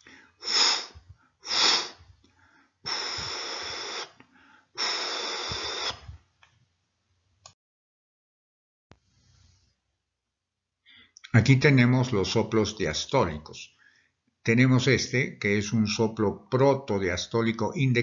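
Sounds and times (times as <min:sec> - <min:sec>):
man imitating hissing murmurs: 0:04.8 - 0:06.0.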